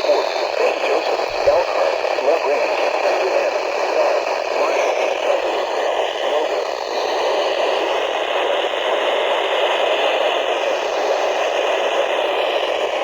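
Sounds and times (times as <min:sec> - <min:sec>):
radio static hiss: 0:00.0 - 0:13.0.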